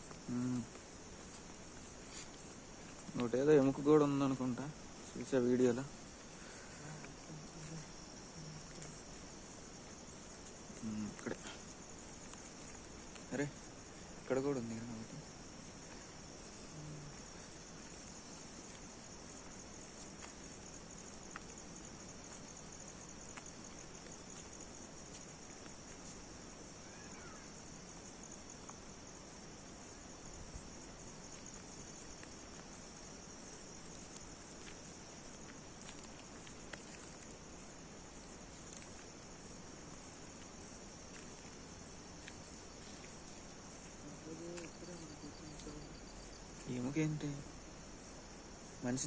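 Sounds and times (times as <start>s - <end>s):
crickets chirring: 0.0s - 49.0s.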